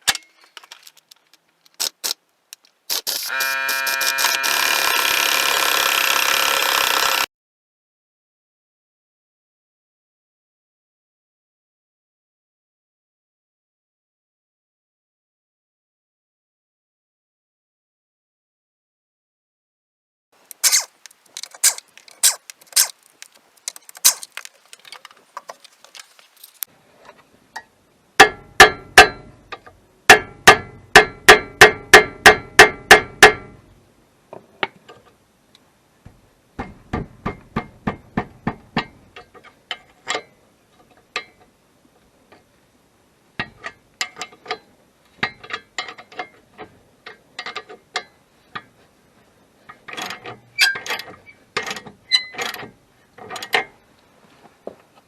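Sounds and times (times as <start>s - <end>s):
metallic clicks and knocks: 20.5s - 26.7s, 43.4s - 48.7s, 49.7s - 53.8s.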